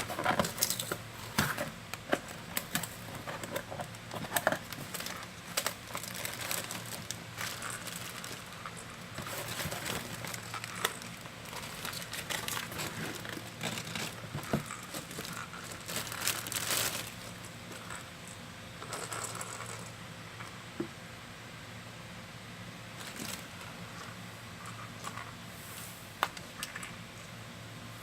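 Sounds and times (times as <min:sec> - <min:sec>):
plastic packaging crinkling: 0:00.0 - 0:18.0, 0:23.0 - 0:23.8.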